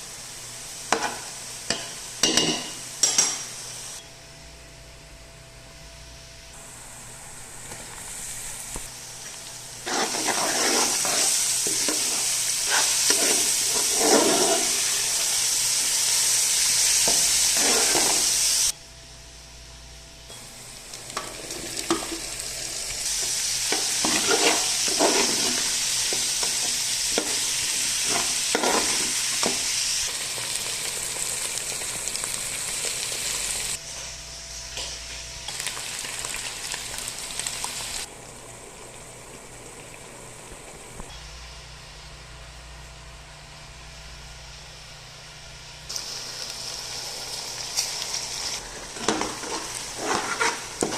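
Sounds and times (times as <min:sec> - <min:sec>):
food sizzling in a pan: 0:00.0 - 0:04.0, 0:06.9 - 0:18.8, 0:20.4 - 0:41.4, 0:45.9 - 0:50.9
spoon scraping a pan: 0:09.8 - 0:15.2, 0:17.0 - 0:18.4, 0:23.2 - 0:29.6, 0:48.9 - 0:50.9.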